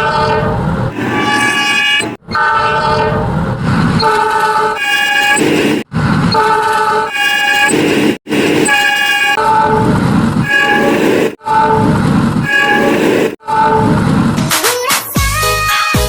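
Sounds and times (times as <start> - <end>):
multi-tone train horn blasts: 0.9 - 3.2, 4.0 - 14.0.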